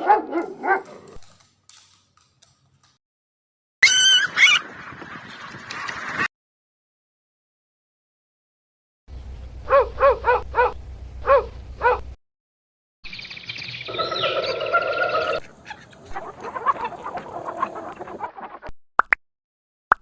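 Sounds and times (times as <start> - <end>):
short yelping calls: 3.8 - 4.6
chickens clucking: 13.9 - 18.7.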